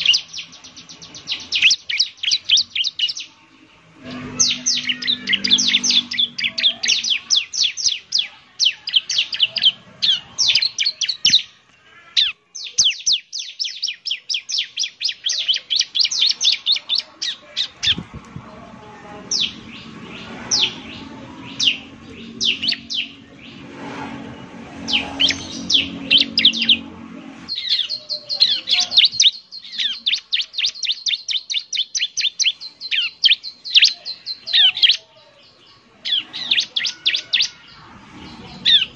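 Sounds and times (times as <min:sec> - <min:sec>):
bird chirping song: 0:00.0 - 0:38.9
low hum: 0:17.8 - 0:27.6.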